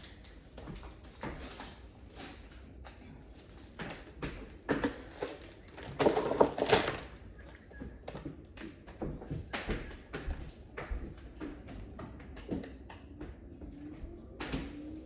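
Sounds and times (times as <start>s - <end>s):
objects knocking and clattering: 3.7s - 7.2s.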